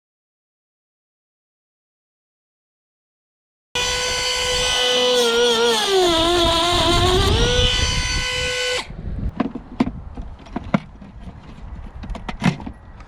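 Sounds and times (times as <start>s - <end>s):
power drill running: 3.8s - 8.9s
handling clicks and knocks: 9.3s - 13.0s.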